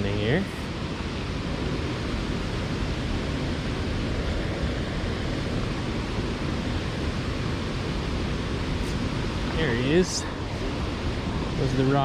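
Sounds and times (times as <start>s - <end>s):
stream water flowing: 0.0s - 12.0s.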